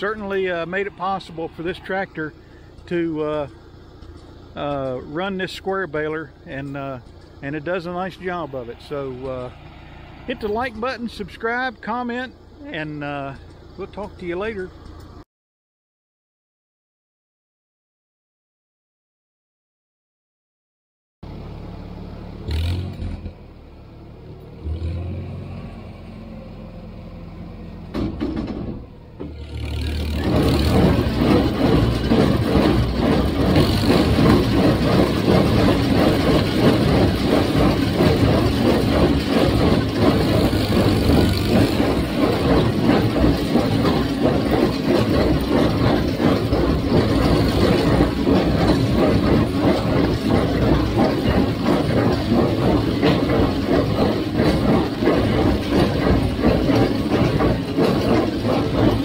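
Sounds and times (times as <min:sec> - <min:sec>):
rough mechanical running: 0:00.0 - 0:15.2, 0:21.3 - 0:25.8, 0:26.6 - 0:59.0
tractor engine running: 0:00.0 - 0:15.2, 0:21.2 - 0:59.0
knocks: 0:27.9 - 0:59.0.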